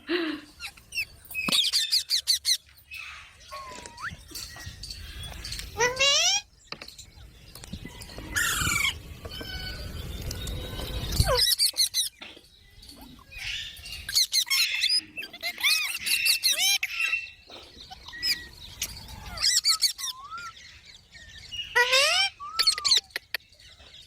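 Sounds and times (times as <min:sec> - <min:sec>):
parrot chirping and squawking: 0:00.6 - 0:06.5, 0:08.3 - 0:12.2, 0:13.1 - 0:20.6, 0:21.4 - 0:23.3.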